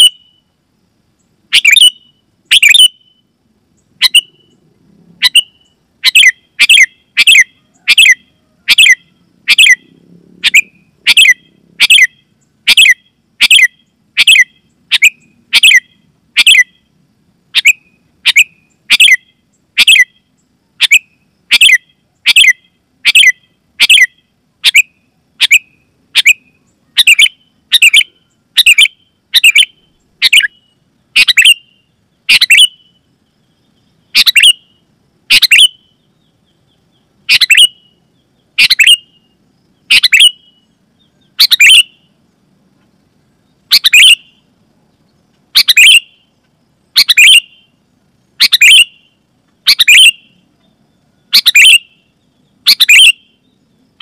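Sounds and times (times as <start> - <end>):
bird sharp call notes: 0.0 - 0.3, 1.5 - 3.2, 4.0 - 4.5, 5.2 - 9.8, 10.4 - 16.8, 17.6 - 20.2, 20.8 - 32.9, 34.2 - 34.7, 35.3 - 35.9, 37.3 - 37.9, 38.6 - 39.2, 39.9 - 42.0, 43.7 - 44.3, 45.6 - 46.2, 47.0 - 47.7, 48.4 - 49.1, 49.7 - 50.4, 51.3 - 52.0, 52.7 - 53.4.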